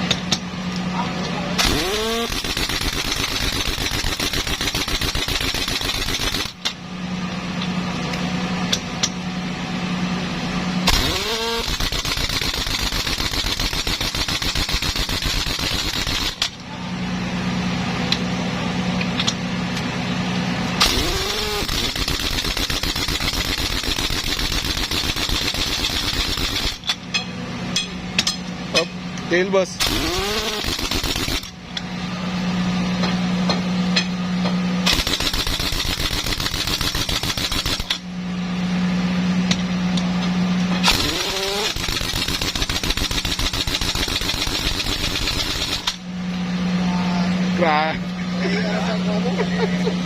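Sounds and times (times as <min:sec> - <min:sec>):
steady low hum: 0:00.0 - 0:50.0
impact wrench whining and hammering: 0:01.6 - 0:06.8, 0:10.8 - 0:16.6, 0:20.8 - 0:29.0, 0:29.8 - 0:31.9, 0:33.0 - 0:38.1, 0:39.4 - 0:46.1.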